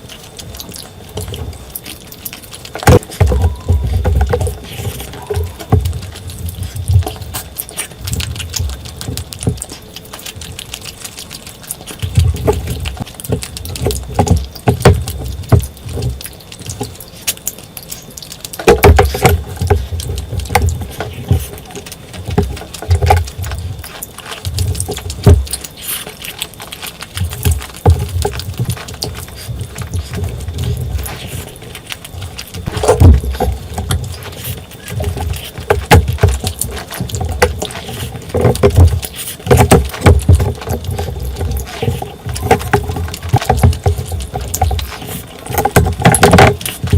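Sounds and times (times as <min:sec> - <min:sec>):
wet chewing and smacking: 0:00.0 - 0:46.9.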